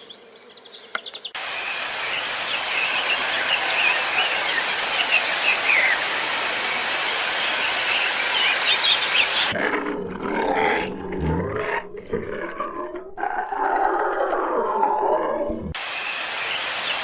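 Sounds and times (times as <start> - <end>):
small birds chirping: 0.0 - 6.2, 7.3 - 9.6.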